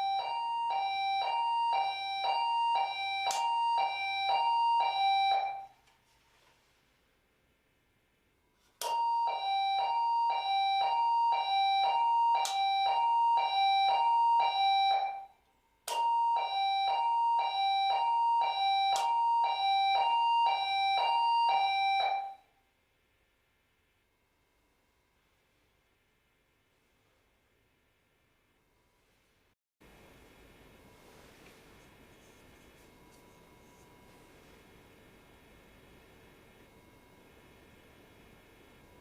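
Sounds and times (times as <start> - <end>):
two-tone electronic alarm: 0.0 - 5.8, 8.8 - 22.5, 32.8 - 34.6.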